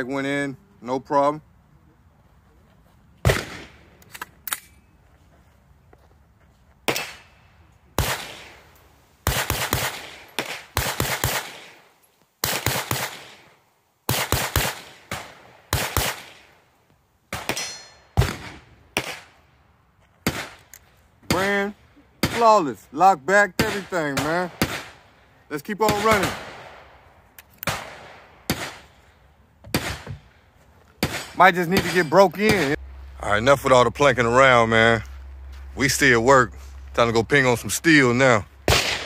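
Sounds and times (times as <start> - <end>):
pistol shots: 3.2 - 3.8, 6.8 - 7.4, 8.0 - 13.5, 14.1 - 16.6, 17.3 - 19.4, 20.2 - 20.7, 21.3 - 22.6, 23.6 - 25.1, 25.8 - 27.0, 27.6 - 29.0, 29.7 - 30.1, 31.0 - 32.8, 38.7 - 39.0.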